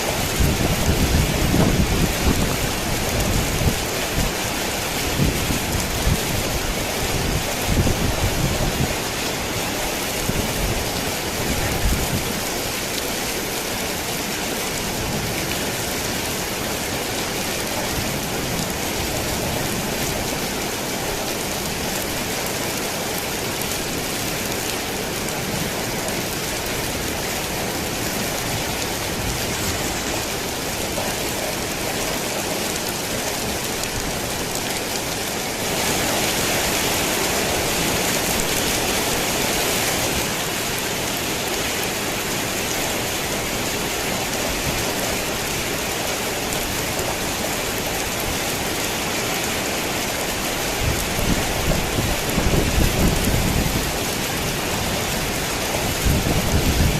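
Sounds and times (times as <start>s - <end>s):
rain on a tin roof: 0.0s - 56.9s.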